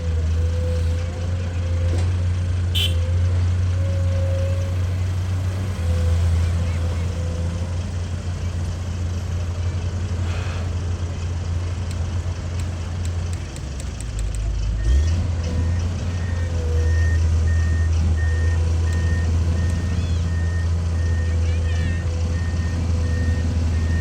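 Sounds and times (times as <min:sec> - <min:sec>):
excavator diesel engine running: 0:00.0 - 0:24.0
travel alarm beeping: 0:02.8 - 0:03.0, 0:14.8 - 0:24.0.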